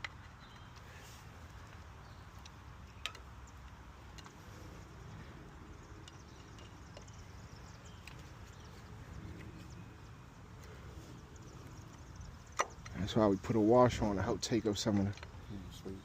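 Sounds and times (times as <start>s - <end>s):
hand tools clicking and tapping: 0.0s - 4.5s, 5.8s - 9.7s.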